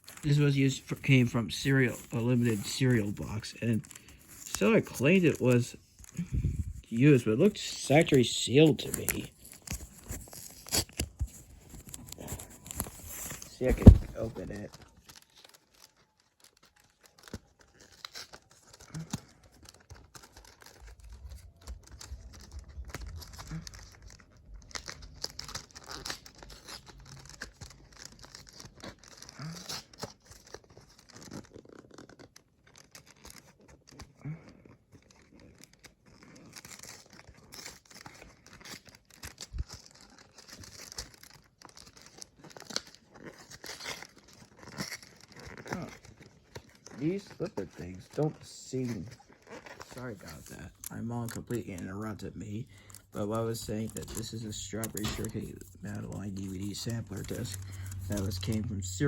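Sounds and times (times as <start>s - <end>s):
plastic packaging crinkling: 0.0s - 59.0s
dull handling bumps: 13.5s - 14.3s.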